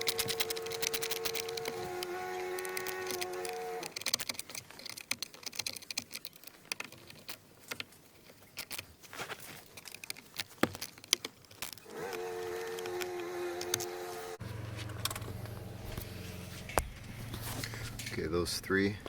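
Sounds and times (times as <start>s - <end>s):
plastic trim clicks and rattles: 0.0s - 8.9s, 9.6s - 14.0s
steady humming tone: 11.9s - 19.0s.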